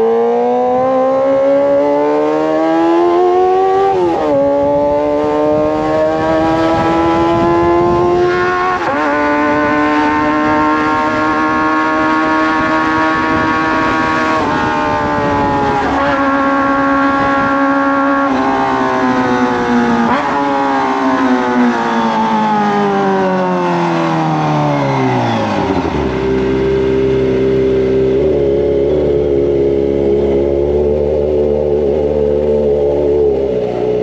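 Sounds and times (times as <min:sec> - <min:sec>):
motorcycle engine revving: 0:00.0 - 0:34.0.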